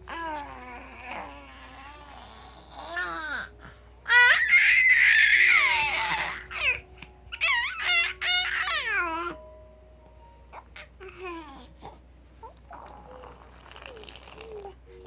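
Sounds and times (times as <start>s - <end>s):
baby squealing: 2.0s - 9.4s.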